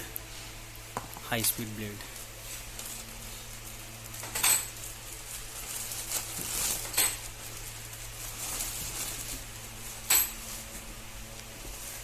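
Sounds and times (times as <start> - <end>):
low steady hum: 0.0 - 12.0
packaging rustling: 5.2 - 10.7.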